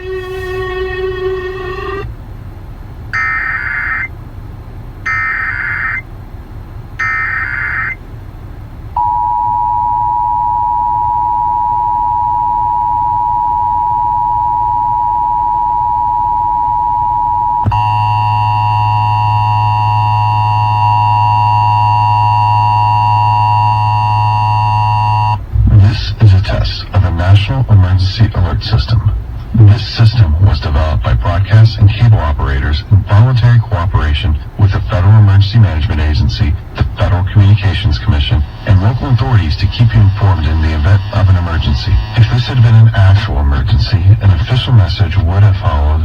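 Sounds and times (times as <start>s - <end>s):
two-tone attention signal: 0.0s - 2.1s, 3.2s - 4.1s, 9.0s - 25.4s
low hum: 0.0s - 46.0s
screeching digital data bursts: 3.2s - 4.1s, 5.1s - 6.0s, 7.0s - 8.0s, 37.3s - 43.2s.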